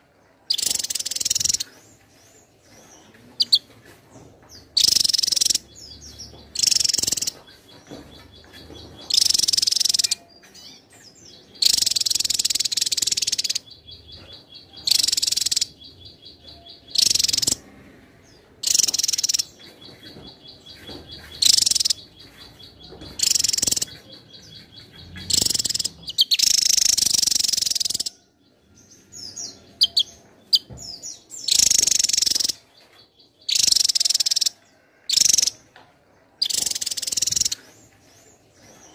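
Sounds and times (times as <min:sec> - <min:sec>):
bird singing high-pitched bursts: 0:00.5 - 0:01.7, 0:04.8 - 0:07.4, 0:09.0 - 0:10.3, 0:11.6 - 0:17.6, 0:18.6 - 0:19.6, 0:20.7 - 0:22.3, 0:23.2 - 0:28.2, 0:29.2 - 0:30.7, 0:31.3 - 0:32.6, 0:33.4 - 0:35.6, 0:36.4 - 0:37.6.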